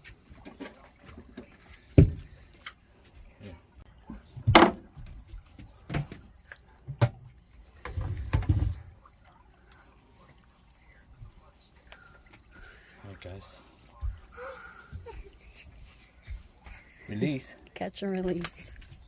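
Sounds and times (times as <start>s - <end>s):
knocks and thumps on a boat: 0.0s - 2.4s, 4.1s - 9.1s.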